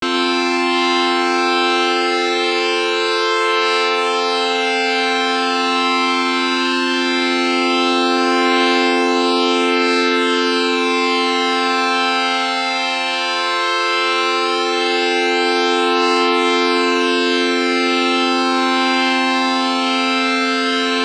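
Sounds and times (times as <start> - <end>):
steady siren: 0.0 - 21.0.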